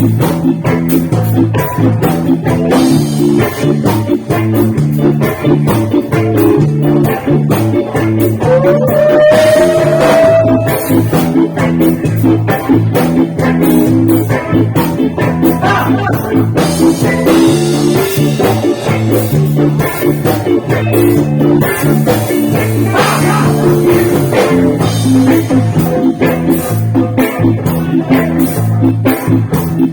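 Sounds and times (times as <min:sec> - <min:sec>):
bass guitar: 0:00.0 - 0:29.9
drum beat: 0:00.0 - 0:29.9
electric guitar: 0:00.0 - 0:29.9.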